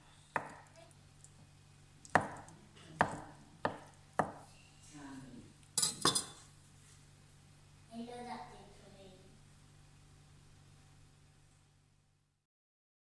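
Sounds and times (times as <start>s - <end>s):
knife chopping on cutting board: 0.3s - 0.8s, 2.1s - 4.5s.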